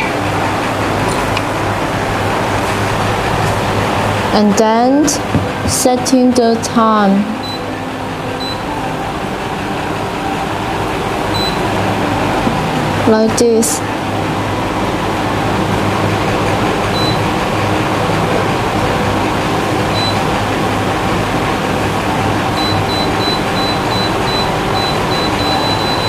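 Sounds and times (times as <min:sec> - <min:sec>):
steady hum and hiss: 0:00.0 - 0:26.0
held tone: 0:05.0 - 0:21.8, 0:22.4 - 0:26.0
control panel beeps: 0:07.4 - 0:07.6, 0:08.4 - 0:08.7, 0:11.3 - 0:11.7, 0:16.9 - 0:17.2, 0:20.0 - 0:20.3, 0:22.6 - 0:26.0.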